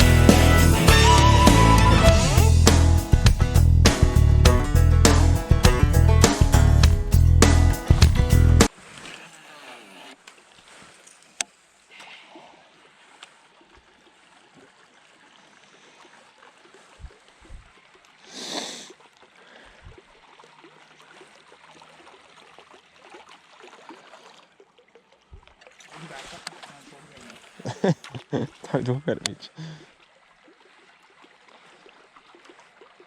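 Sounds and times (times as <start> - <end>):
faint water noise: 7.8 - 33.0
rushing splash: 25.8 - 27.7.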